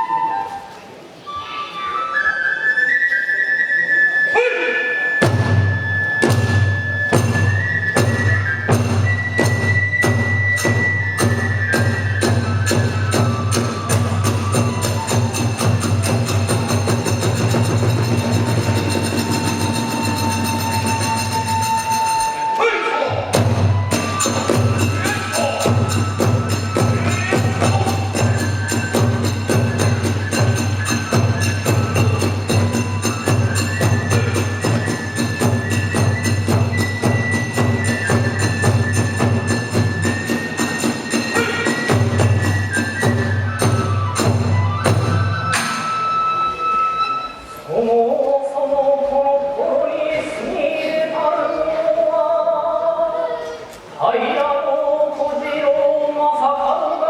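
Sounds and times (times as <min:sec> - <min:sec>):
bamboo flute high note: 0:00.0 - 0:47.8
drum beats: 0:05.2 - 0:46.2
hand cymbals ringing: 0:14.4 - 0:22.6, 0:23.8 - 0:43.3.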